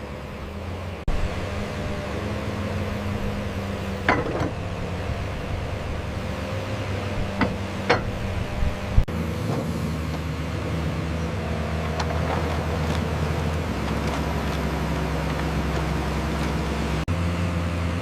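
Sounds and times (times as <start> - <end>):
diesel machinery running: 0.0 - 18.0
sharp metallic knocks: 7.4 - 8.2.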